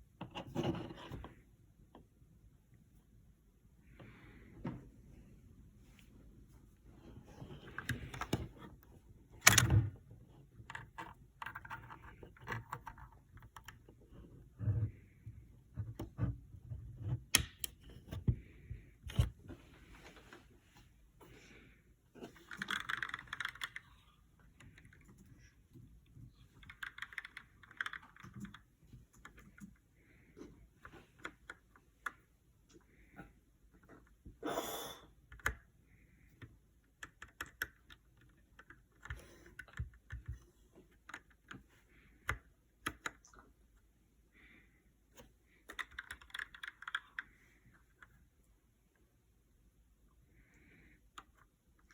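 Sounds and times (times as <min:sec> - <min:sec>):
mechanical keyboard typing: 0:22.5 - 0:23.9, 0:26.6 - 0:28.6, 0:45.6 - 0:47.3.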